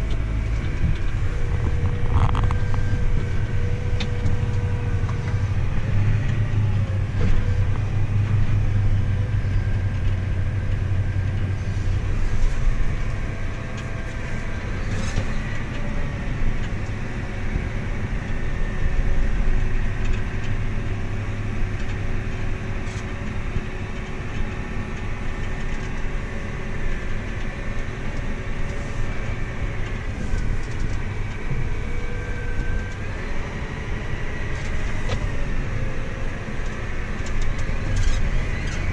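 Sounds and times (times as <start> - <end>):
faint wavering whine: 0.0 - 21.8
engine rumbling under load: 0.0 - 38.9.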